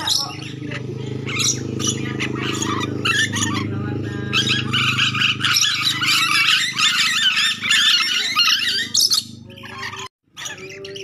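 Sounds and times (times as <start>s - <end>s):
steady low hum: 0.0s - 10.0s
lorikeets chattering and screeching: 0.0s - 11.0s.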